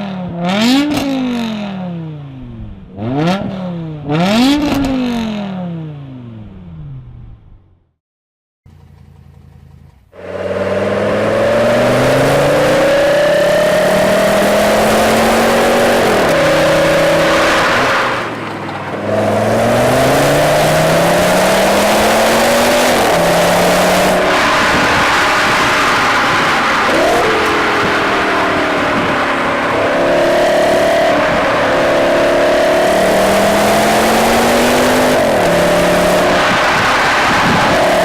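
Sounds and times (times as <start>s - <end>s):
sports car engine accelerating: 8.7s - 38.0s.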